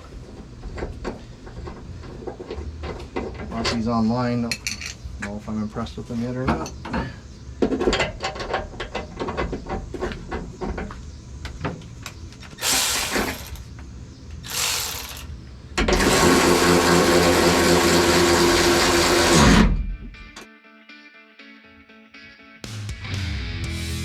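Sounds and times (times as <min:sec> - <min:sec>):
handheld power tool whining: 0:12.6 - 0:13.6, 0:14.4 - 0:19.8.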